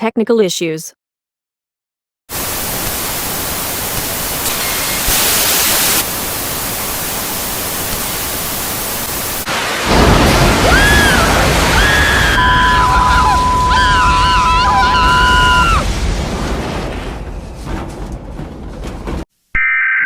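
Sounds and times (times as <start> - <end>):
static hiss: 2.3 - 10.0.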